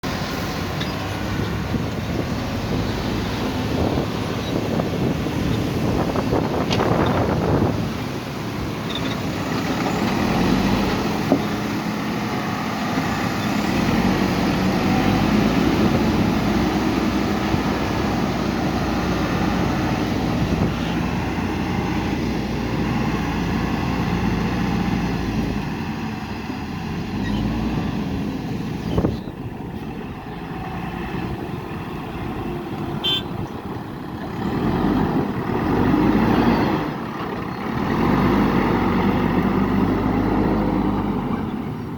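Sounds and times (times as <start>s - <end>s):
backhoe diesel engine working: 0.0s - 41.9s.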